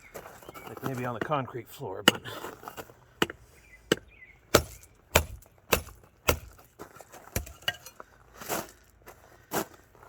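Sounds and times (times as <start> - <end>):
hammer striking steel frame: 3.2 - 6.5.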